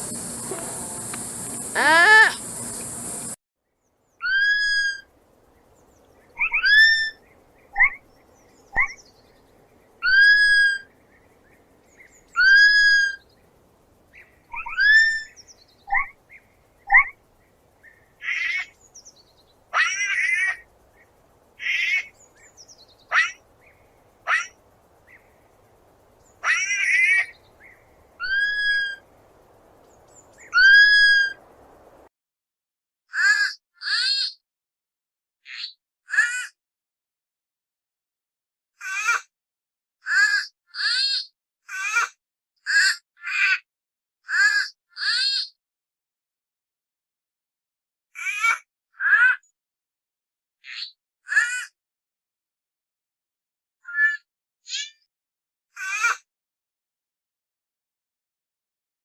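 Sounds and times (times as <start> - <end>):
sloth buzzy cries: 1.8 - 2.4, 19.7 - 20.6, 26.4 - 27.3, 28.2 - 29.0, 30.5 - 31.4
sloth chirps: 4.2 - 5.1, 6.4 - 8.0, 10.0 - 11.0, 12.0 - 13.3, 14.2 - 16.2, 16.8 - 17.2, 19.7 - 25.3, 26.2 - 29.1, 30.0 - 31.5
sloth squeaking whistles: 4.2 - 5.1, 6.4 - 8.0, 10.0 - 10.9, 12.4 - 13.2, 14.5 - 16.2, 28.2 - 29.0, 30.5 - 31.4.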